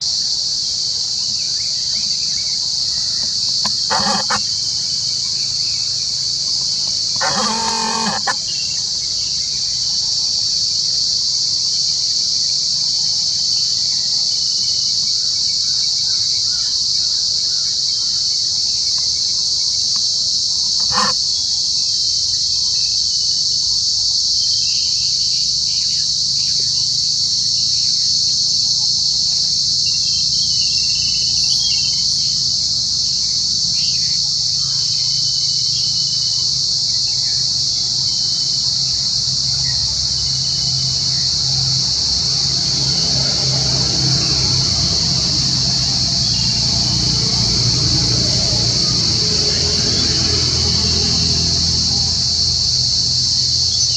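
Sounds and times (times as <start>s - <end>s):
high-pitched insect chorus: 0.0s - 53.9s
faint chirps: 1.3s - 9.6s.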